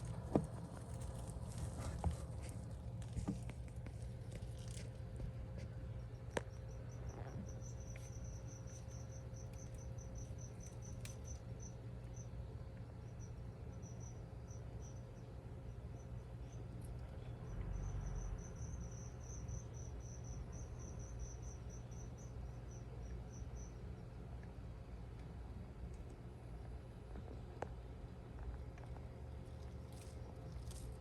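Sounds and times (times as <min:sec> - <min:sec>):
cricket chirping: 0:00.0 - 0:25.0
steady low hum: 0:00.0 - 0:31.0.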